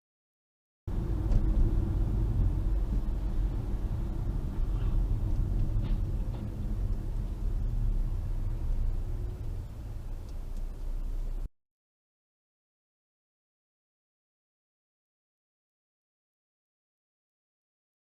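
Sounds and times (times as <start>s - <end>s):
car engine and tyre noise: 0.9s - 11.5s.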